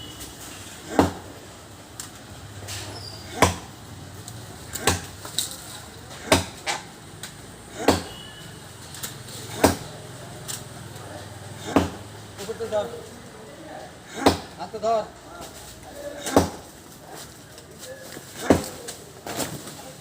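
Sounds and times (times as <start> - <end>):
axe chopping into tree trunk: 0.9 - 1.2, 3.3 - 3.7, 4.7 - 5.2, 6.2 - 6.8, 7.8 - 8.2, 9.5 - 9.9, 11.6 - 12.0, 14.1 - 14.6, 16.2 - 16.6, 18.4 - 19.5.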